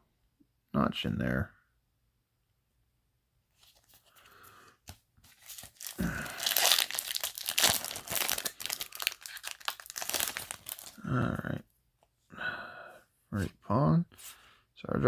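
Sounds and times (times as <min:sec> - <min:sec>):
foil wrapper crinkling: 0:05.3 - 0:11.0.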